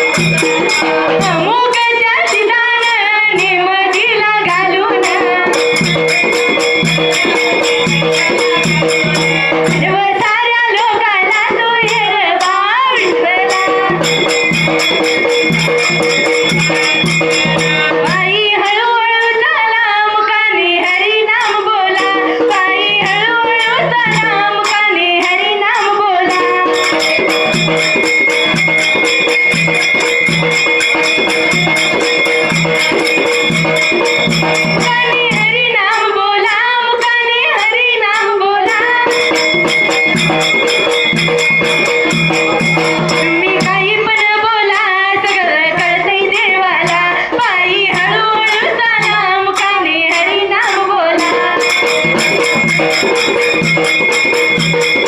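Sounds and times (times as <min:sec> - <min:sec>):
steady percussion beat: 0:00.0 - 0:55.0
woman singing: 0:01.1 - 0:05.9, 0:07.1 - 0:14.6, 0:18.1 - 0:27.6, 0:34.8 - 0:40.2, 0:43.0 - 0:51.9.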